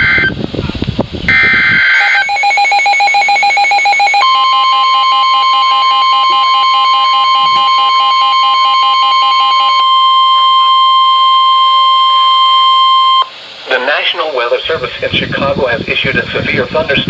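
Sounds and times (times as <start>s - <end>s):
steady warning alarm tone: 0.0s - 0.4s, 1.3s - 13.3s
rapid pulsing electronic beep: 2.0s - 13.2s.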